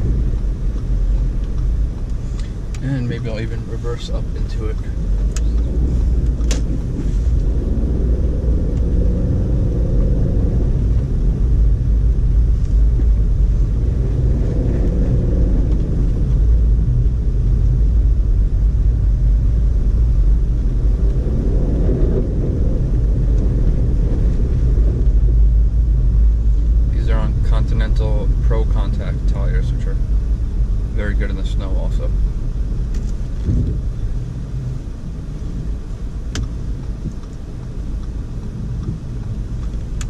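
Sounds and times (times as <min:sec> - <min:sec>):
car engine and tyres rumbling: 0:00.0 - 0:40.0.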